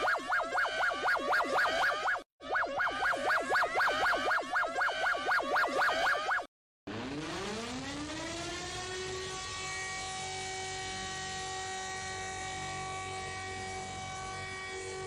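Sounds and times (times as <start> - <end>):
civil defense siren winding up: 0.0 - 15.0.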